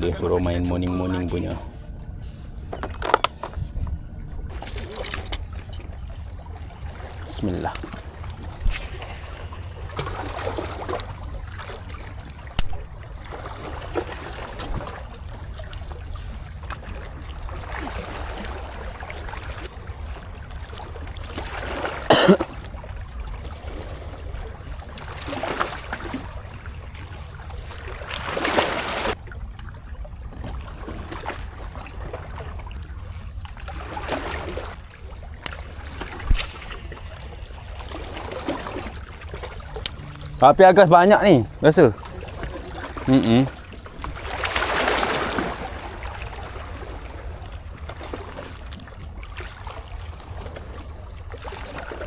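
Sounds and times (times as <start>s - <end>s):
wind rumble on microphone: 2.6s - 18.7s, 35.6s - 38.1s
sea water slapping against rocks: 6.7s - 29.2s, 30.4s - 52.0s.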